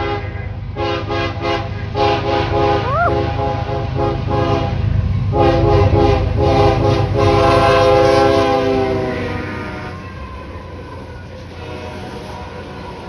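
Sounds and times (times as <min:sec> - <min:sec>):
low rumble of passing locomotives: 0:00.0 - 0:13.0
locomotive air horn blasts: 0:11.6 - 0:12.7.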